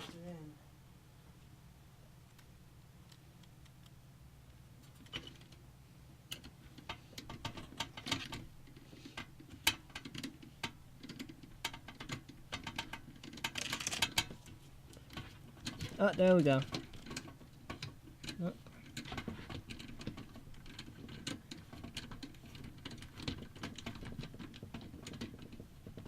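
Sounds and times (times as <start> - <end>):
small clicks and taps of handling: 6.3 - 26.0.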